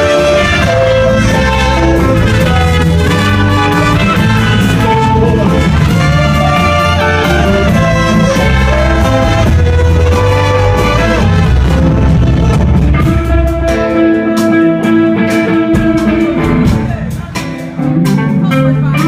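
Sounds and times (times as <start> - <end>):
horns playing: 0.0 - 16.9
steady bass line: 0.0 - 19.0.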